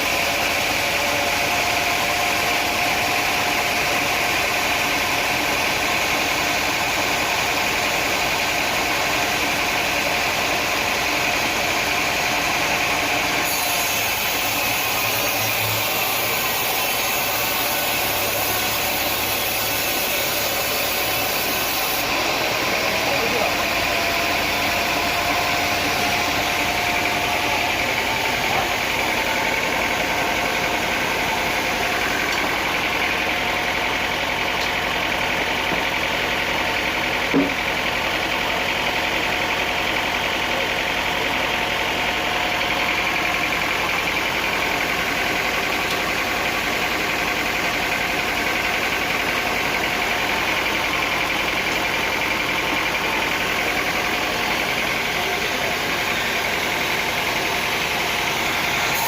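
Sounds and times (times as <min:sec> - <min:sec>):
sawmill machinery drone: 0:00.0 - 0:59.0
sharp knock: 0:37.3 - 0:37.6.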